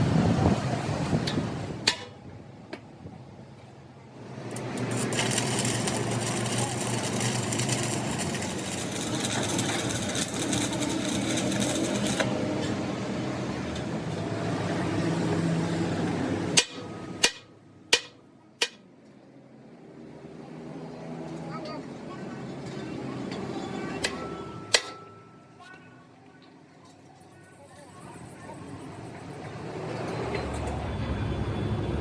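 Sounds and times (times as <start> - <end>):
harsh metalworking noise: 4.2 - 14.9.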